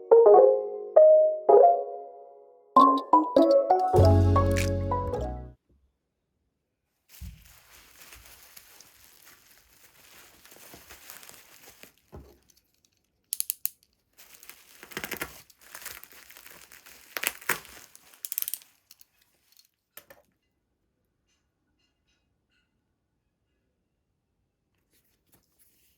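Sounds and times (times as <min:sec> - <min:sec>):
paper and plastic crinkling: 0:04.0 - 0:04.9, 0:07.1 - 0:13.1, 0:14.1 - 0:19.8.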